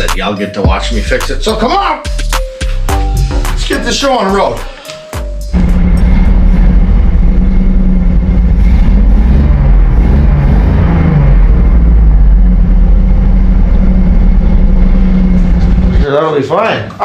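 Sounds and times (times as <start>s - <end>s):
car engine revving: 4.5s - 16.4s.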